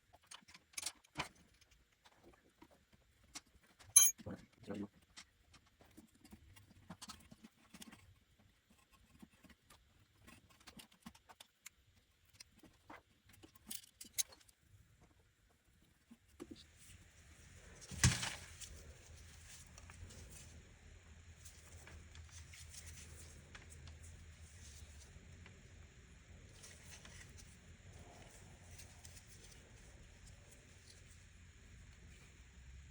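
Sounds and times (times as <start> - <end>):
tools clicking and tapping: 4.0 - 4.2
low steady hum: 16.6 - 32.9.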